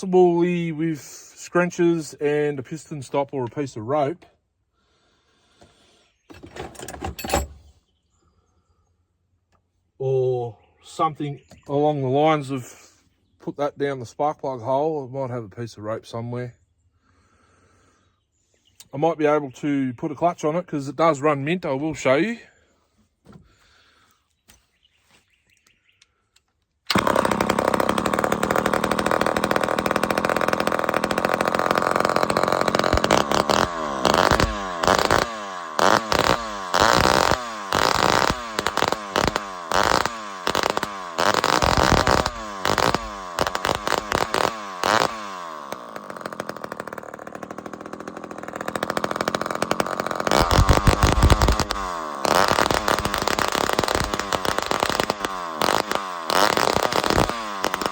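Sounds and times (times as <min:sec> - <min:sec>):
chainsaw revving and idling: 0:26.9 - 0:57.9.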